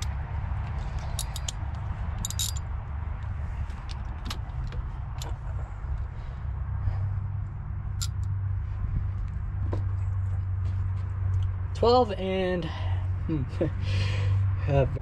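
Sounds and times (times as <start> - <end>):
steady low rumble: 0.0 - 15.0
metal hand tools clinking: 1.0 - 1.6, 2.2 - 2.7.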